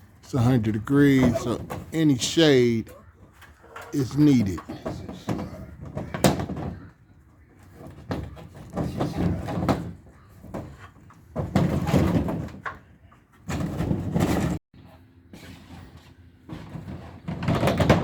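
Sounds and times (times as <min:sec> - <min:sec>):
carpentry knocks and bangs on wood: 0:04.6 - 0:06.9, 0:07.8 - 0:12.8.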